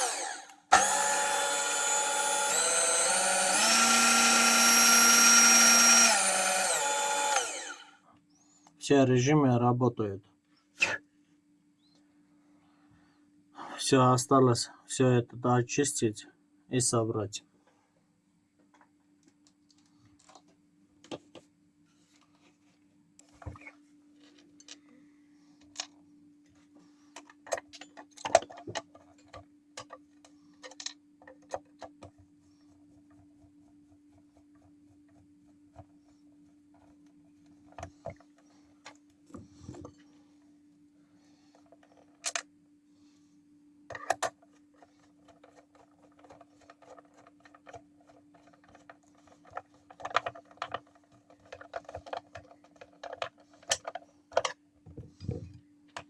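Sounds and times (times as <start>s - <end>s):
clicks and knocks of mixer parts: 27.1s - 32.2s, 43.9s - 44.5s, 48.8s - 56.0s.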